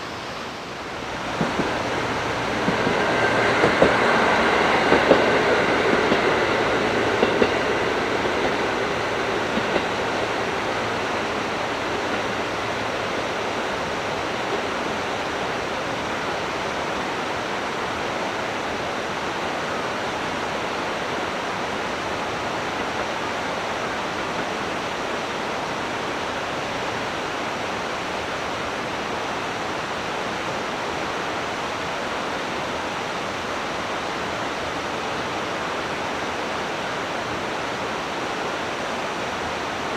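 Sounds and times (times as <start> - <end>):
steady rushing noise: 0.0 - 25.7
passing train rail noise: 0.0 - 39.9.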